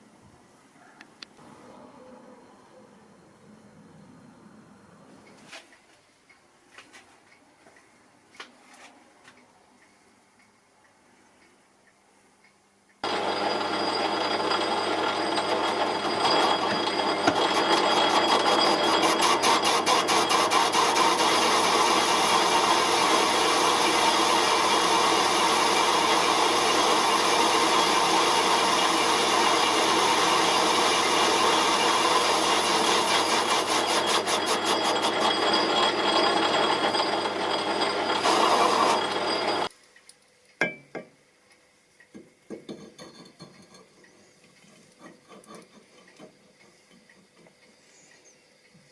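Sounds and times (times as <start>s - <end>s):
machine tool cutting metal: 13.0s - 39.7s.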